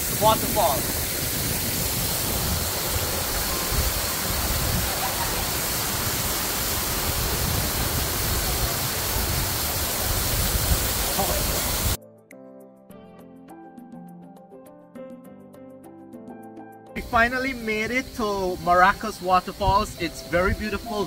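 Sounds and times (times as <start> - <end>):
waterfall rushing: 0.0 - 12.0, 17.0 - 21.0.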